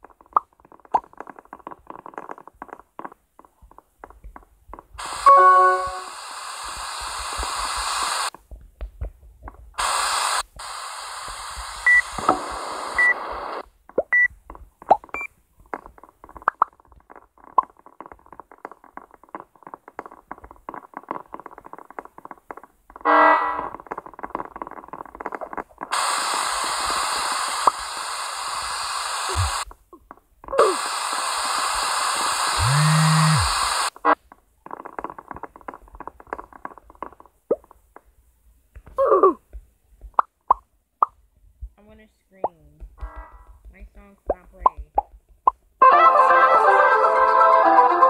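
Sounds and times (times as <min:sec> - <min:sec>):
electronic static hiss: 0:00.0 - 0:08.6, 0:09.5 - 0:14.3, 0:14.9 - 0:38.0
short high beeps: 0:05.2 - 0:06.1.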